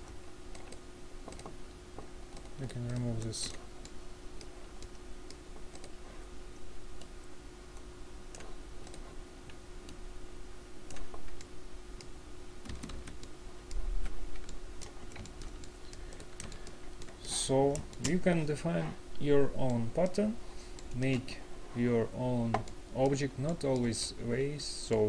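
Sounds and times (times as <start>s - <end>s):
computer keyboard keys clicking: 0.0s - 1.6s, 2.3s - 6.0s, 7.8s - 10.0s, 10.8s - 18.2s
faint steady hum: 0.0s - 25.0s.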